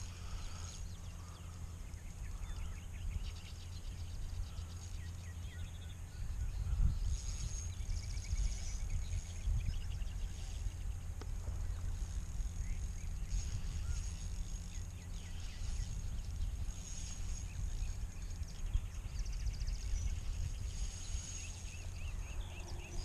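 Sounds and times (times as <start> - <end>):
low wind rumble: 0.0 - 23.0
small birds chirping and trilling: 0.0 - 23.0.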